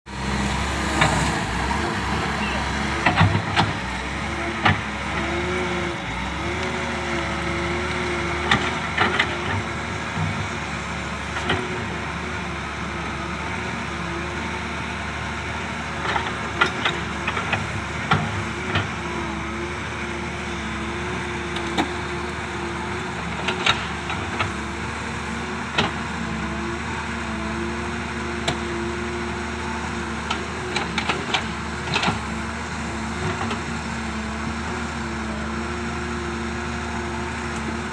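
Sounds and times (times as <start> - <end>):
excavator diesel engine running: 0.1 - 37.9.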